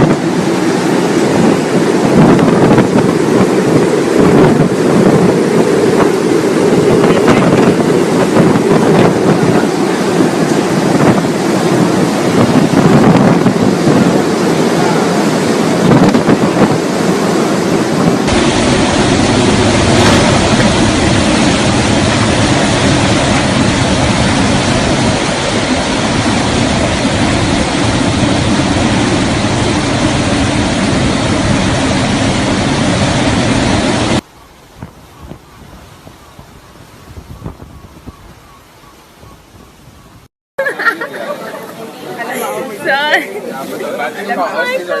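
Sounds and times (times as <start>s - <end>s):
hurricane wind and rain: 0.0s - 40.3s
dull low rumble: 18.2s - 34.2s.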